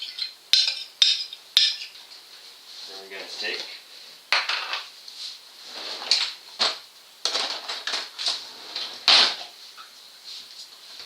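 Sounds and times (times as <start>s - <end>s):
cookware clattering and knocking: 0.0s - 2.0s, 4.4s - 4.9s.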